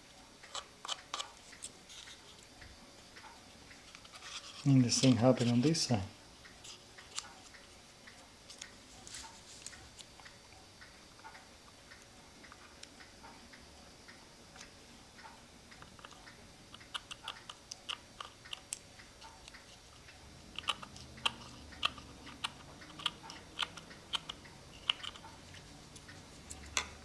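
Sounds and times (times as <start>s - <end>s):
paper and wood clicks and crinkles: 8.5s - 9.9s.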